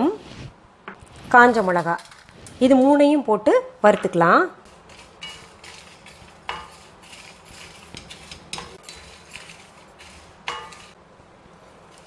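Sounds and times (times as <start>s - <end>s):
spatula scraping spices in pan: 4.7s - 11.0s.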